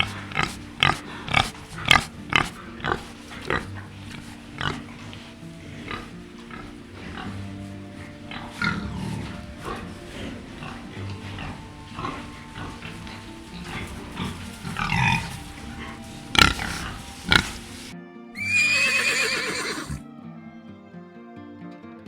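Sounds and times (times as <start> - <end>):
pigs grunting: 0.0 - 20.0
background music: 0.0 - 22.0
horse whinnying: 18.4 - 20.0.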